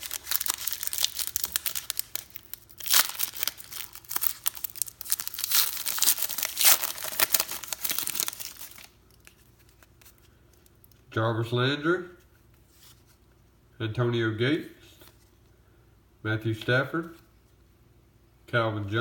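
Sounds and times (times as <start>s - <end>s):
plastic wrapper tearing and crinkling: 0.0s - 11.0s.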